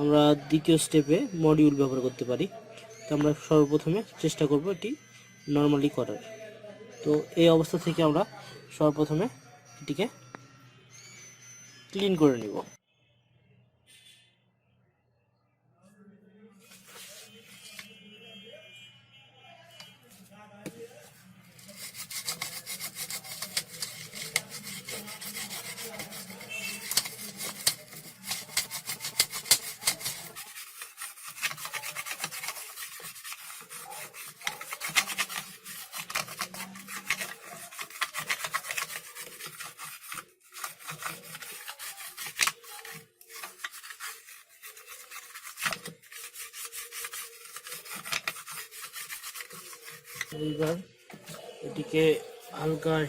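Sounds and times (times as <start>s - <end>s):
scrubbing circuit board: 21.5s - 50.8s.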